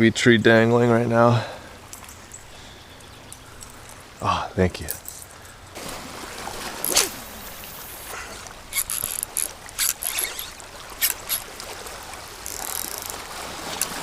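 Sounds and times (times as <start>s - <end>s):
shallow water trickling: 1.4s - 14.0s
sharp water splashes: 5.8s - 14.0s.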